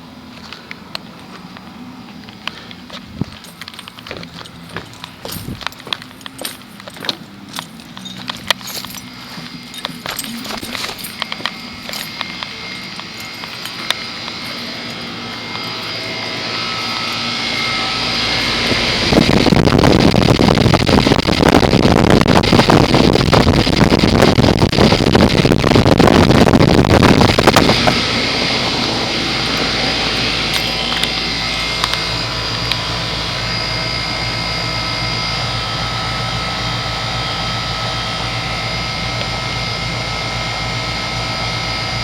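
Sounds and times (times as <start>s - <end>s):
heat pump compressor and fan hum: 0.0s - 42.0s
loud rushing noise: 9.1s - 35.7s.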